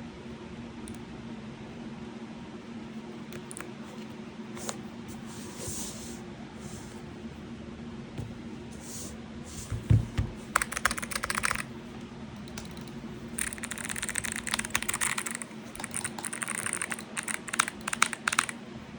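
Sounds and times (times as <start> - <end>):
mechanical keyboard key clicks: 12.4 - 18.6.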